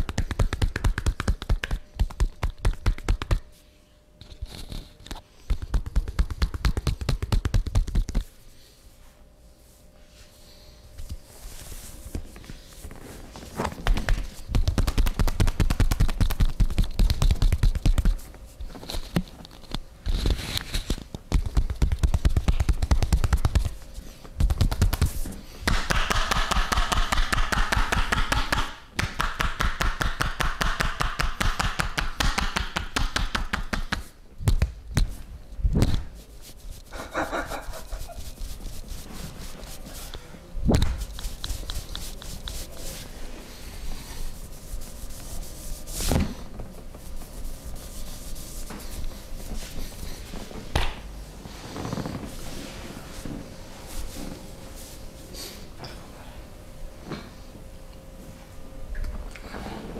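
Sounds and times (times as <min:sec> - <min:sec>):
hands chopping and slapping: 0:24.4 - 0:35.1.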